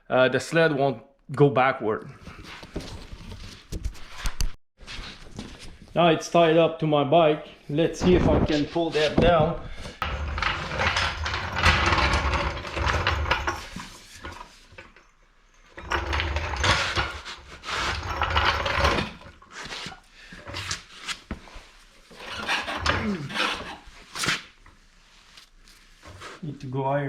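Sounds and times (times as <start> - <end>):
skid frame scraping and rubbing: 10.0 - 14.7, 15.7 - 20.6, 22.1 - 24.4.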